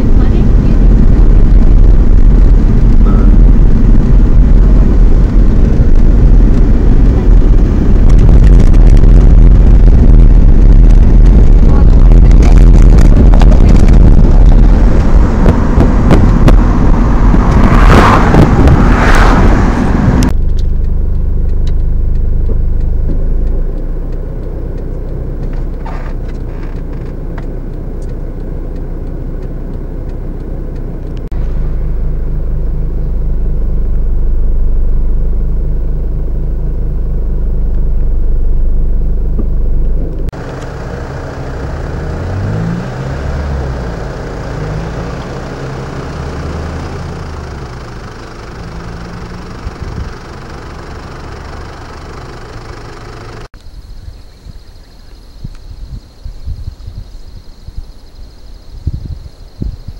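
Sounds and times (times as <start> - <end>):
loud noisy rush: 0.0 - 20.3
car engine droning: 0.0 - 59.9.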